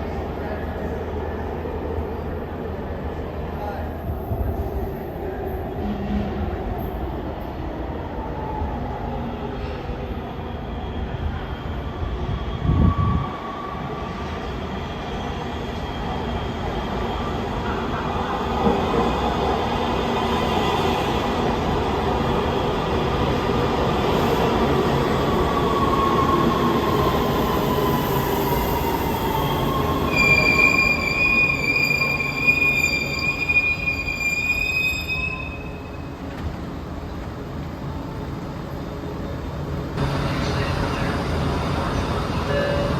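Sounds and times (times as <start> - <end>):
subway train rumble: 0.0 - 42.9
high wheel squeal: 30.1 - 36.0.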